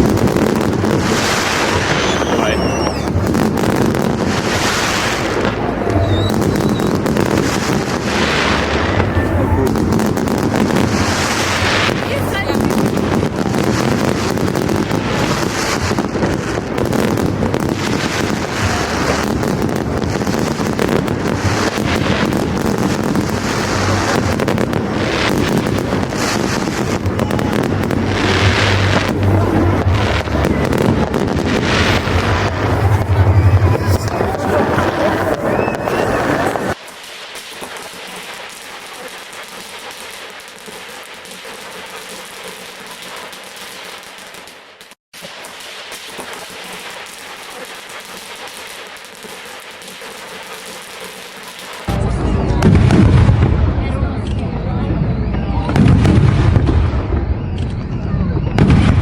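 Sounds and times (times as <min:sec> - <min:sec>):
fireworks cracking and banging: 0:00.0 - 0:59.0.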